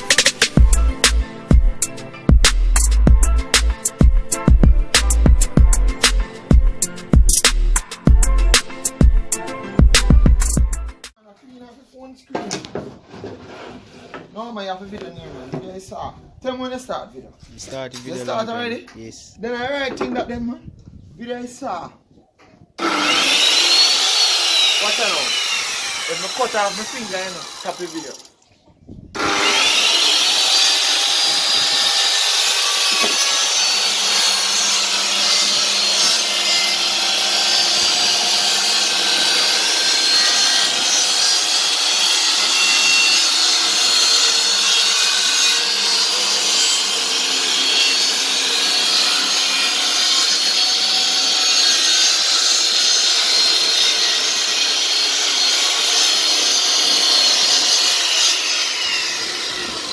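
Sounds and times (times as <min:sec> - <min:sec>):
power saw cutting wood: 0:22.8 - 0:28.4, 0:29.2 - 0:59.9.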